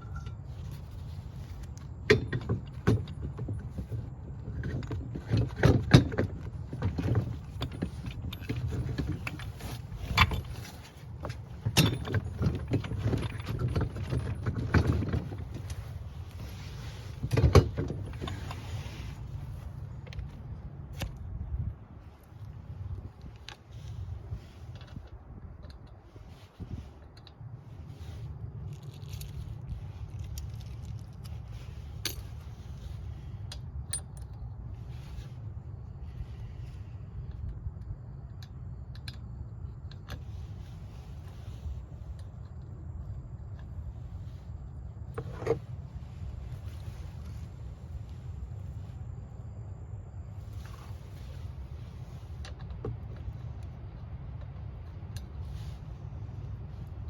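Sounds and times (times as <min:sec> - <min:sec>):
metal tools clinking and scraping: 0:00.0 - 0:20.3, 0:33.9 - 0:34.4
knocks and clatter on a wheel: 0:02.0 - 0:15.9.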